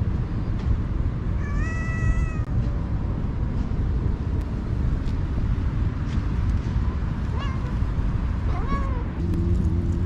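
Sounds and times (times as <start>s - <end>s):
cat meowing: 1.4s - 2.5s, 7.3s - 7.8s, 8.5s - 9.1s.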